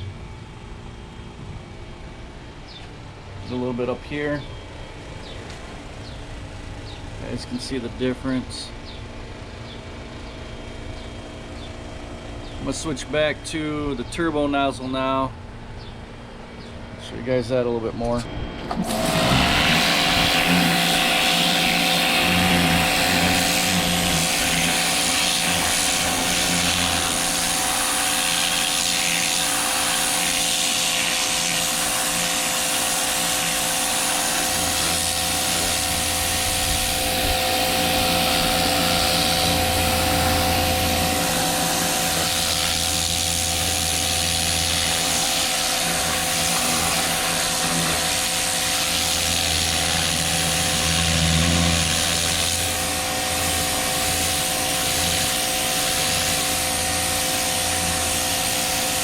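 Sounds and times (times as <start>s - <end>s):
pressure washer motor humming: 0.0s - 59.0s
water spraying hiss: 18.9s - 59.0s.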